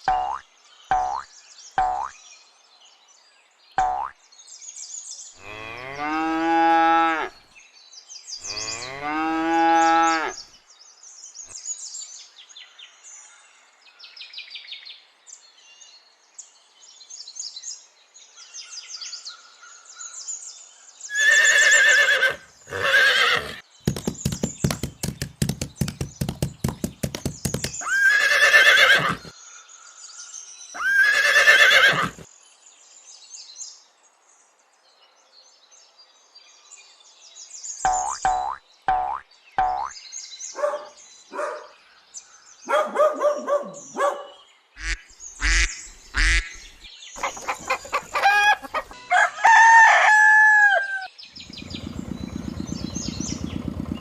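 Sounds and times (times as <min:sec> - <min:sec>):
rapid rattling pulses: 0:23.9 - 0:27.8, 0:51.4 - 0:54.0
farm animal calls: 0:47.2 - 0:49.3.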